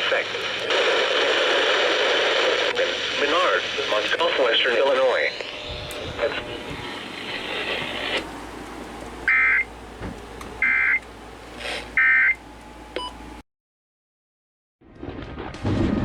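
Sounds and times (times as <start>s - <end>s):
radio hiss: 0.0s - 12.1s
two-tone data bursts: 9.2s - 9.7s, 10.6s - 11.0s, 12.0s - 12.4s.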